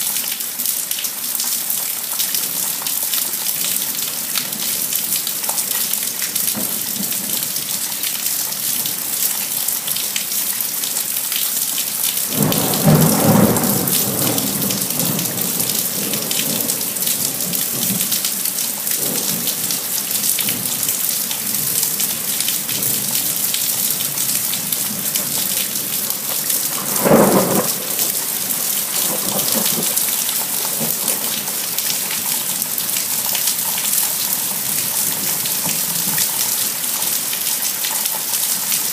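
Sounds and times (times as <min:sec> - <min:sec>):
heavy rain hissing: 0:11.9 - 0:37.8
thunder claps: 0:12.3 - 0:18.4, 0:19.0 - 0:32.2.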